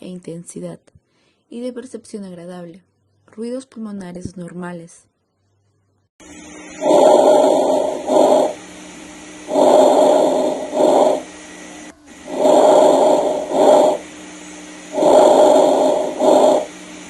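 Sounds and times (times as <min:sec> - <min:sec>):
breath sounds through stethoscope: 0:06.8 - 0:08.6, 0:09.5 - 0:11.3, 0:12.2 - 0:14.0, 0:14.9 - 0:16.8.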